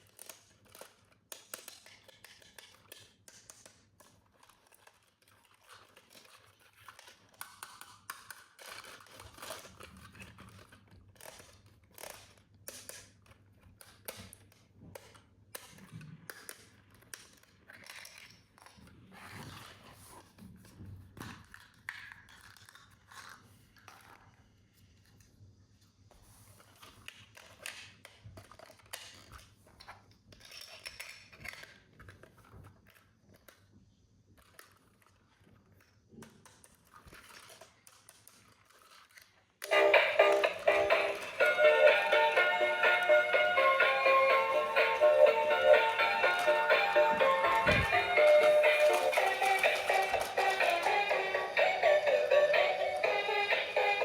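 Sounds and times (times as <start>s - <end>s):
hands unpacking packaging: 44.3s - 52.7s.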